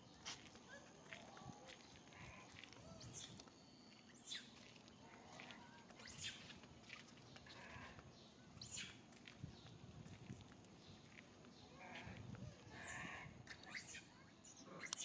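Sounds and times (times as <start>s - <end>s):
monkey high-pitched squeals: 13.7s - 15.0s.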